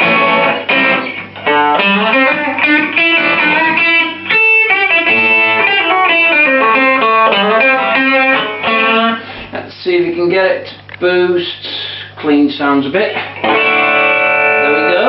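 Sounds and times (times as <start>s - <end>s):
distorted electric guitar melody: 0.0s - 9.4s, 12.8s - 15.0s.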